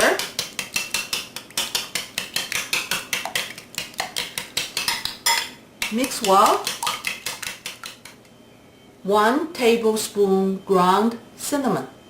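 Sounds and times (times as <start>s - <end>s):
eggs being beaten in a bowl: 0.0s - 8.2s
utensil clicking against bowl: 0.1s - 8.3s.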